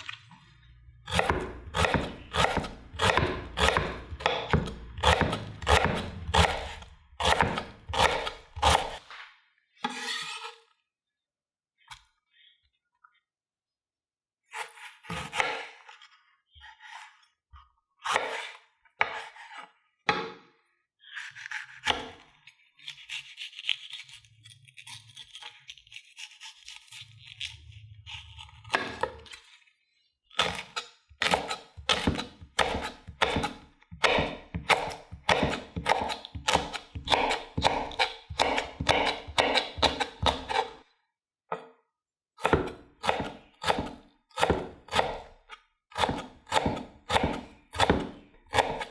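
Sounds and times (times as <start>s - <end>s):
knife chopping on cutting board: 1.1s - 9.0s, 30.4s - 40.8s, 42.4s - 48.9s.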